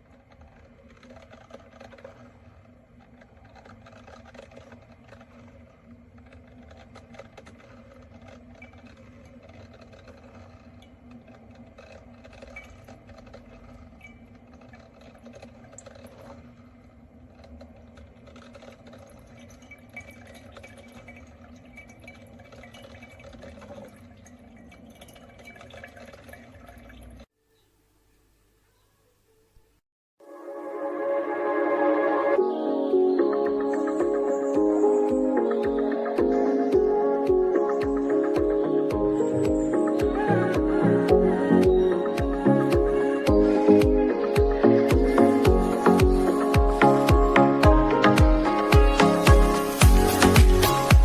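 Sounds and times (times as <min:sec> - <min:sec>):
water trickling and gurgling: 0:00.2 - 0:27.3
coffee maker hum: 0:30.7 - 0:51.0.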